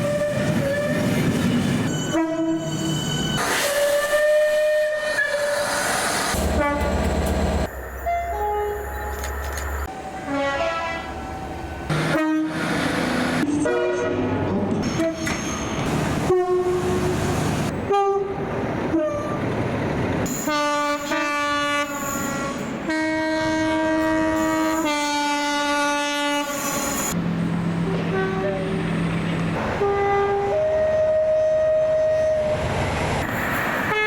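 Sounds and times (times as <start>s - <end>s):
train running noise: 0.0s - 34.0s
train horn blasts: 1.9s - 2.7s, 6.5s - 7.0s, 8.0s - 9.3s, 10.0s - 11.2s, 11.9s - 12.7s, 13.5s - 15.3s, 16.2s - 17.1s, 17.9s - 19.4s, 20.3s - 27.0s, 27.9s - 28.7s, 29.7s - 32.6s.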